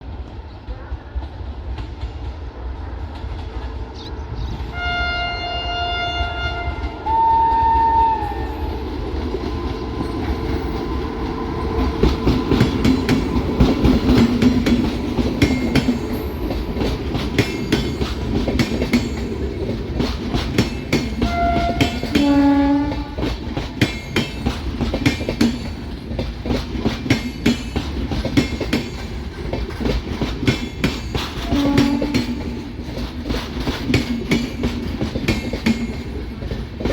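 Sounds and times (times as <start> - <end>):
train rumbling: 0.0 - 36.9
locomotive horn blasts: 4.7 - 8.6, 21.2 - 23.3, 31.5 - 32.4
wheels clattering over rail joints: 11.8 - 36.9.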